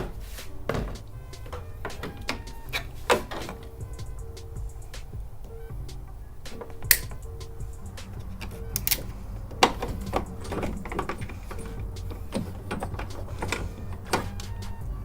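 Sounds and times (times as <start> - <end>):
plastic parts clicking and rattling: 0.0 - 5.6, 6.4 - 15.0
steady low hum: 0.0 - 15.0.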